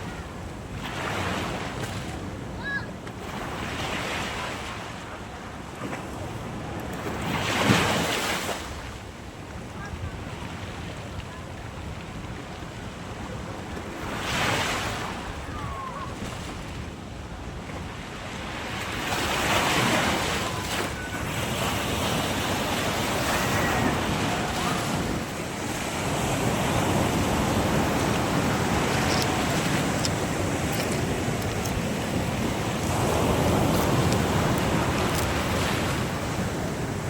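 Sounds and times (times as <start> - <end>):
sea waves breaking: 0.0 - 37.0
wind buffeting microphone: 19.2 - 37.0.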